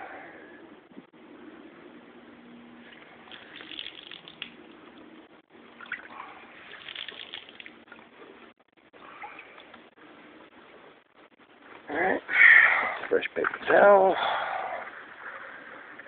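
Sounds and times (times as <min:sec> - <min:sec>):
water splashing and trickling: 0:02.8 - 0:09.9.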